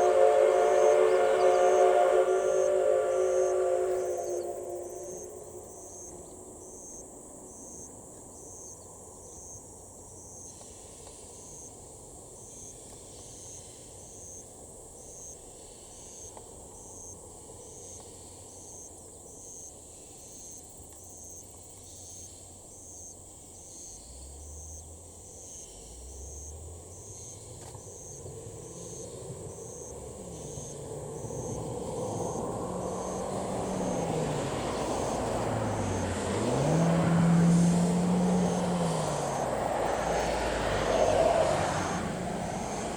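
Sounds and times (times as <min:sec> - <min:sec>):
low rumble: 0:00.0 - 0:06.6
insect chirping: 0:00.0 - 0:42.9.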